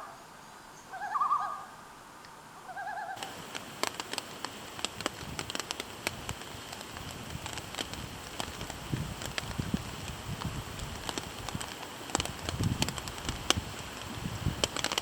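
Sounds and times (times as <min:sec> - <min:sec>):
loon tremolo call: 0:00.9 - 0:01.8, 0:02.6 - 0:03.3
campfire crackling: 0:02.2 - 0:15.0.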